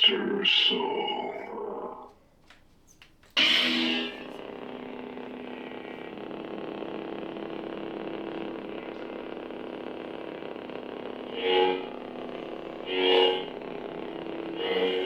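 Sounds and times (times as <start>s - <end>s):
lightsaber hum: 0.0s - 2.2s, 3.4s - 15.0s
lightsaber ignition: 3.4s - 5.8s, 9.2s - 15.0s.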